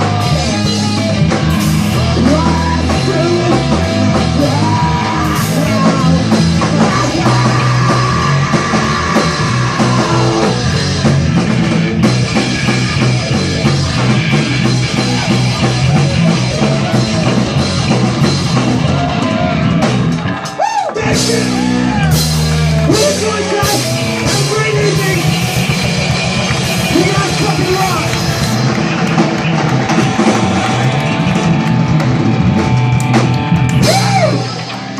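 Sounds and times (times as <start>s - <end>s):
person singing: 0.0s - 10.8s, 33.8s - 34.8s
drum kit: 0.0s - 34.9s
rock band playing live: 0.0s - 34.9s.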